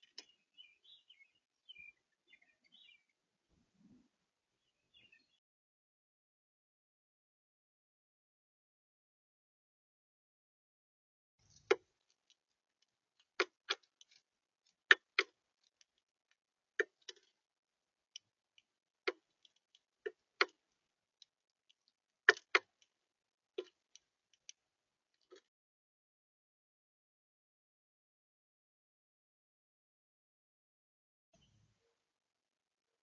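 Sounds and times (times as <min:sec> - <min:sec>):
bird pecking at feeder: 0:11.5 - 0:17.4, 0:18.1 - 0:23.0, 0:23.6 - 0:24.6.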